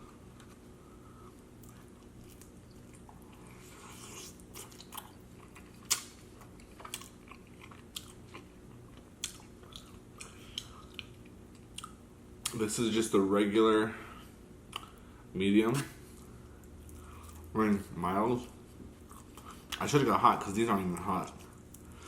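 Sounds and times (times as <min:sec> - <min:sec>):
low steady hum: 0:00.0 - 0:22.0
person chewing with wet smacks: 0:00.4 - 0:12.6, 0:14.7 - 0:15.0.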